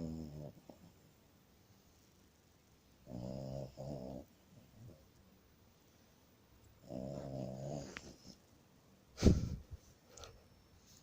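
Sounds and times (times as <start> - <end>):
dog snoring: 0.0 - 0.8, 3.0 - 5.0, 6.8 - 8.2.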